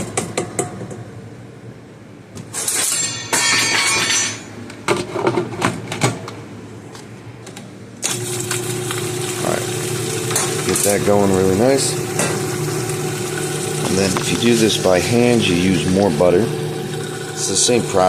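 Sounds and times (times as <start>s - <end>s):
kitchen utensils clattering: 2.6s - 6.2s.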